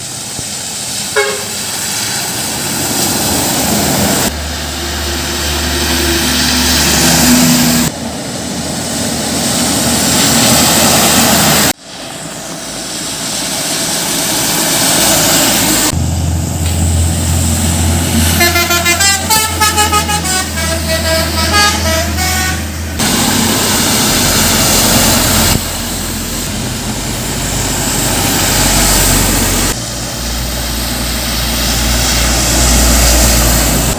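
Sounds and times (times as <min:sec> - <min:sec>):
heavy trucks and buses driving past: 0:00.0 - 0:33.9
bus horn playing a quick tune: 0:01.2 - 0:01.6, 0:18.2 - 0:22.7
deep engine rumble: 0:02.5 - 0:33.9.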